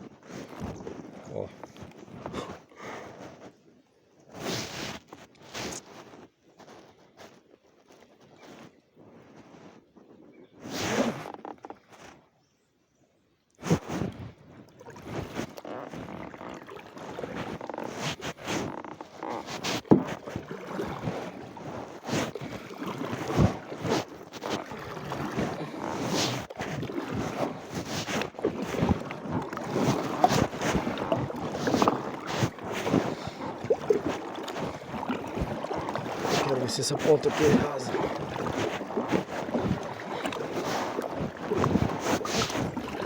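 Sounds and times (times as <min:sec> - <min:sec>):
paddle splashing in water: 0:00.2 - 0:03.4, 0:13.6 - 0:43.0.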